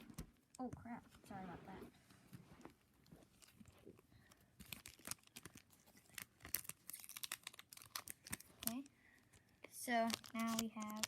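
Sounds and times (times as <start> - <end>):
foil wrapper crinkling: 4.6 - 8.9, 9.8 - 11.0.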